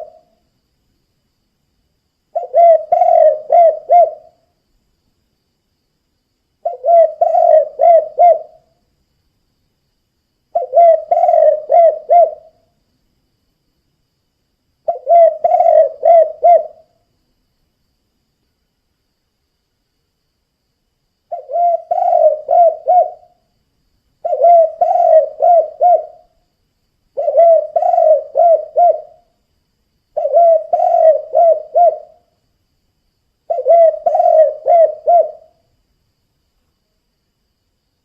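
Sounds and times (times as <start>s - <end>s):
dove cooing: 0.0s - 0.3s, 2.4s - 4.4s, 6.6s - 8.6s, 10.6s - 12.6s, 14.9s - 16.9s, 21.3s - 23.4s, 24.2s - 26.3s, 27.2s - 29.3s, 30.2s - 32.3s, 33.5s - 35.6s.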